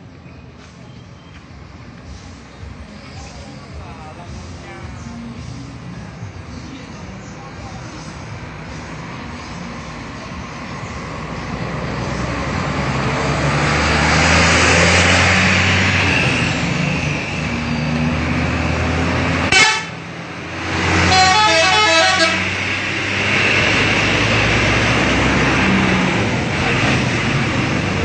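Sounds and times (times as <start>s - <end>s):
heavy bus engine running: 0.0s - 28.0s
multi-tone musical horn: 19.5s - 20.0s, 21.0s - 22.5s.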